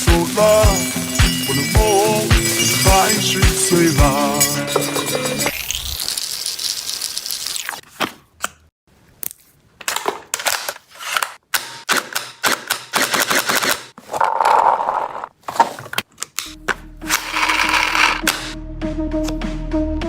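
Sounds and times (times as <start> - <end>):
music: 0.0 - 5.5, 16.5 - 20.0
toy blaster rapid clicking shots: 11.6 - 14.0, 17.1 - 18.6.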